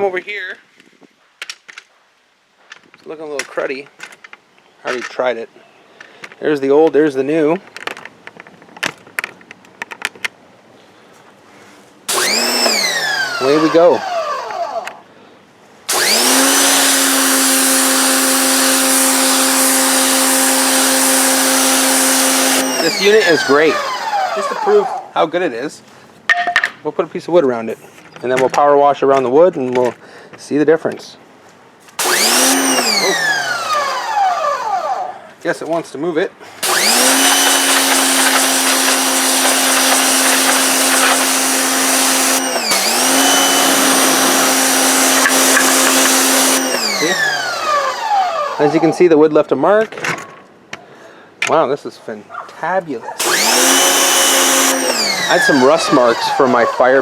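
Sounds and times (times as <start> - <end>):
pressure washer motor whining: 12.1 - 15.0, 15.9 - 25.1, 32.0 - 35.1, 36.6 - 49.0, 53.2 - 57.0
water jet hissing on concrete: 36.6 - 47.2.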